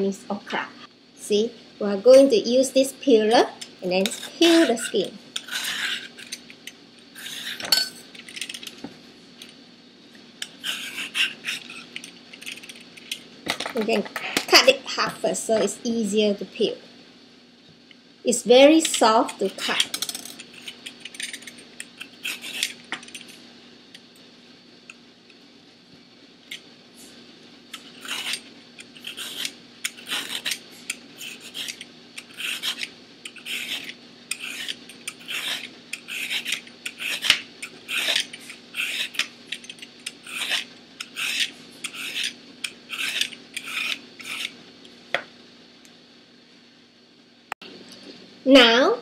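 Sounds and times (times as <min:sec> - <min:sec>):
vegetable peeler scraping skin: 0:04.0 - 0:06.4, 0:07.1 - 0:07.7, 0:10.4 - 0:12.8, 0:19.6 - 0:22.8, 0:27.8 - 0:44.6.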